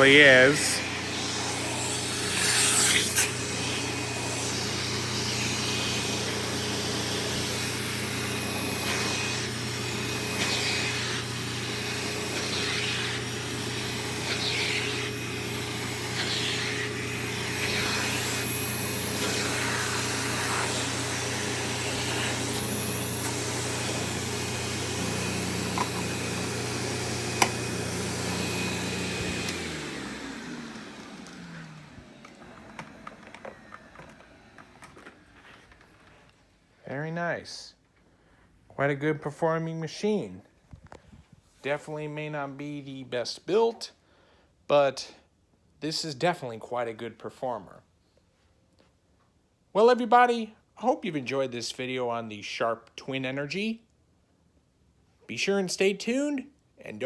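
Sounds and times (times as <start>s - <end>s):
vacuum cleaner motor running: 0.0s - 36.2s
vacuum cleaner winding down: 0.0s - 36.2s.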